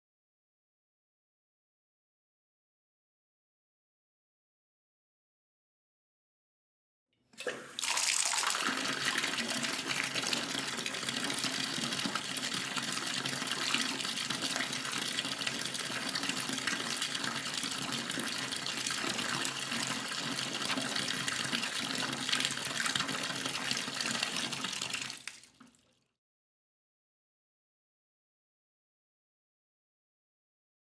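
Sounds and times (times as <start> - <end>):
faucet water splashing into tub: 7.4 - 25.8.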